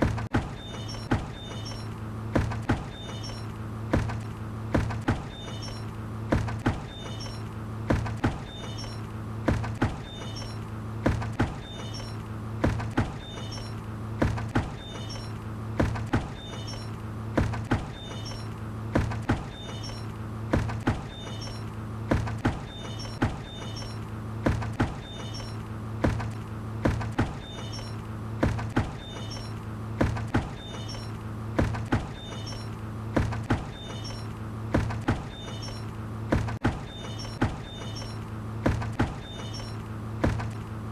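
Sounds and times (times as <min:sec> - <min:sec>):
steady low hum: 0:00.0 - 0:40.9
short high squeaks: 0:00.6 - 0:02.0, 0:02.9 - 0:03.5, 0:05.1 - 0:06.0, 0:06.8 - 0:07.6, 0:08.3 - 0:09.1, 0:09.8 - 0:10.7, 0:11.4 - 0:12.3, 0:13.1 - 0:13.8, 0:14.7 - 0:15.4, 0:16.2 - 0:17.0, 0:17.8 - 0:18.6, 0:19.4 - 0:20.1, 0:21.0 - 0:21.7, 0:22.6 - 0:24.1, 0:24.8 - 0:25.7, 0:27.3 - 0:28.0, 0:29.0 - 0:29.6, 0:30.4 - 0:31.3, 0:32.0 - 0:32.8, 0:33.5 - 0:34.4, 0:35.0 - 0:36.0, 0:36.8 - 0:40.6.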